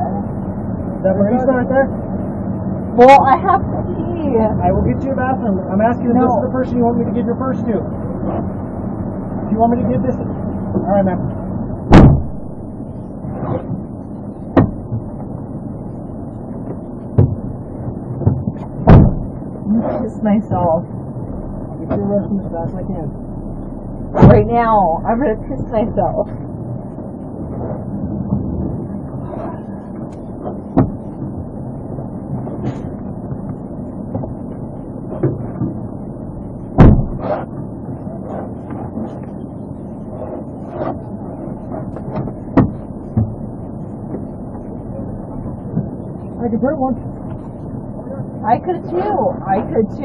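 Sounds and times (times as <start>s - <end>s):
car engine rumble: 0.0s - 50.0s
vehicle idling: 0.0s - 50.0s
car door slamming: 11.9s - 12.6s, 18.2s - 19.3s, 36.8s - 37.3s
sharp knocks: 11.9s - 15.4s, 16.6s - 20.0s, 29.4s - 31.5s, 36.7s - 37.7s, 41.8s - 44.6s.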